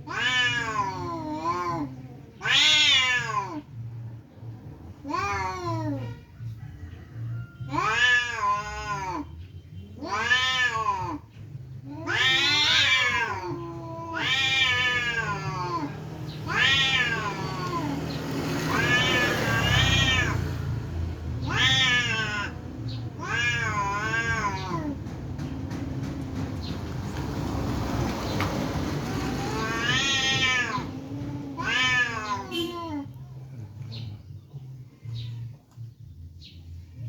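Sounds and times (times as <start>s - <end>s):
cats yowling in a fight: 0.0s - 3.8s, 4.9s - 6.6s, 7.4s - 9.4s, 10.0s - 25.0s, 29.0s - 33.2s.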